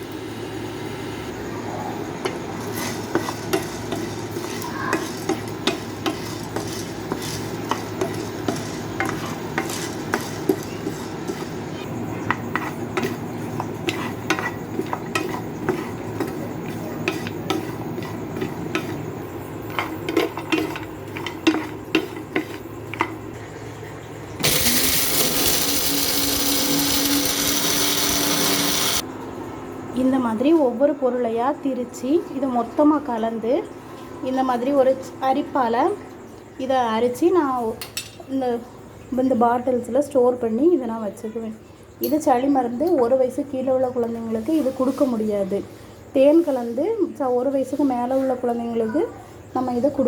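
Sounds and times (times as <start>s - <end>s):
spices roasting in a pan: 1.3s - 23.3s, 24.4s - 29.0s
spatula scraping metal pan: 2.2s - 19.1s
electric grinder running: 24.4s - 29.0s.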